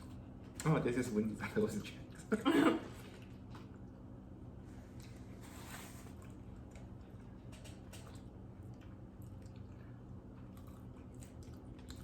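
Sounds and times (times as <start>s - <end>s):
person chewing fries: 4.7s - 12.0s.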